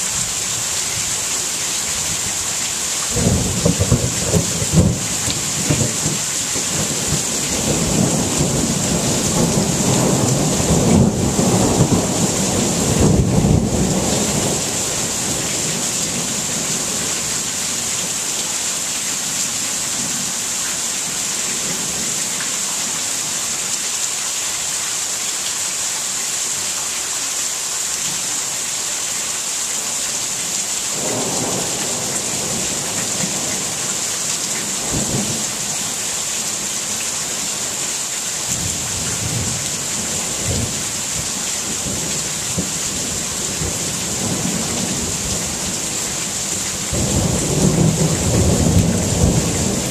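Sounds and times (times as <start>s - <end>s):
steady rain falling: 0.0s - 49.9s
thunder rumbling: 3.1s - 17.1s, 41.8s - 49.9s.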